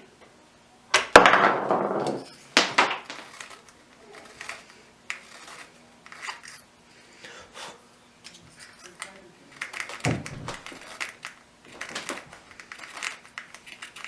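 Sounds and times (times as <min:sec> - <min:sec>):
scraping: 0:01.9 - 0:06.7
small hard objects clinking: 0:02.0 - 0:06.6.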